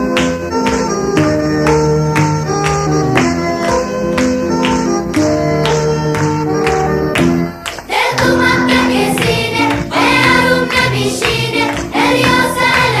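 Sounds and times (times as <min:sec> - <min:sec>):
upbeat song with plucked strings: 0:00.0 - 0:13.0
voices singing: 0:07.9 - 0:13.0.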